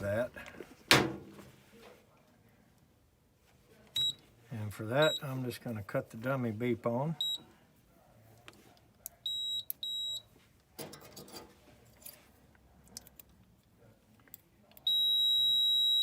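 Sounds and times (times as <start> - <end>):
multimeter continuity beeps: 4.0 - 4.2, 5.0 - 5.4, 7.2 - 7.4, 9.2 - 10.3, 14.8 - 16.0.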